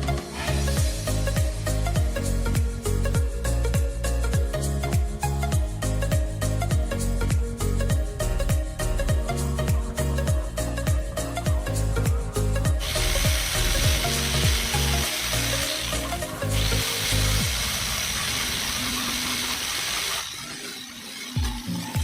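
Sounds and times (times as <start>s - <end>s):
music with heavy bass beat: 0.0s - 18.6s, 21.4s - 22.0s
angle grinder hissing: 12.8s - 22.0s.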